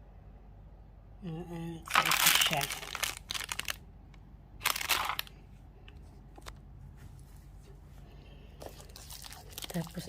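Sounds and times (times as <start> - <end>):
low room hum: 0.0 - 10.0
packaging rustling: 1.9 - 3.8, 4.6 - 5.4.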